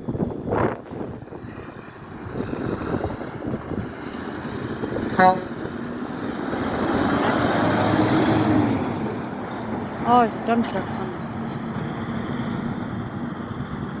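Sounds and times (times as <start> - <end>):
road traffic passing: 0.0 - 14.0
vehicle rumble: 0.0 - 14.0
car horn toot: 5.2 - 5.6.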